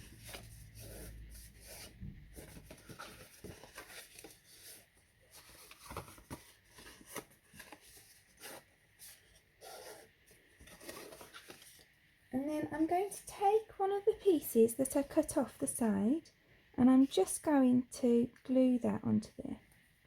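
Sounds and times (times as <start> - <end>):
cardstock rustling and crinkling: 0.0 - 11.9.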